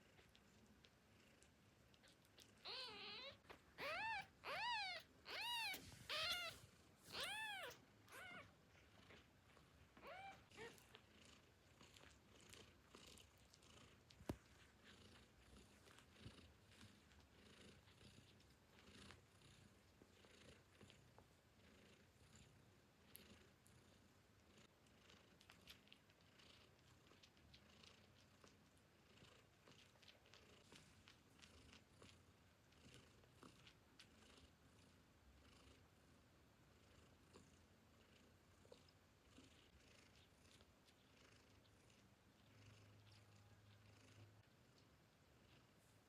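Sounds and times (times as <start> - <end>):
kittens mewing: 2.6 - 8.5.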